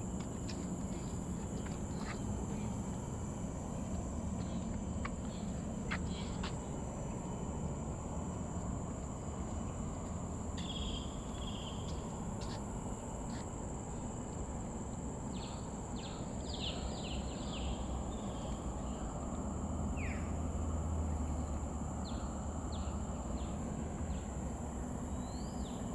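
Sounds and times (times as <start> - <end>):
high-pitched insect drone: 10.3 - 12.7.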